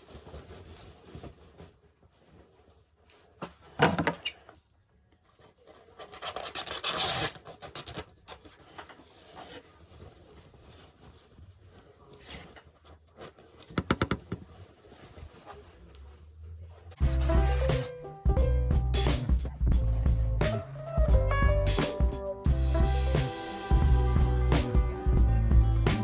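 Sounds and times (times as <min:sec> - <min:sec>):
rubbing and scraping handling noise: 0:00.0 - 0:26.0.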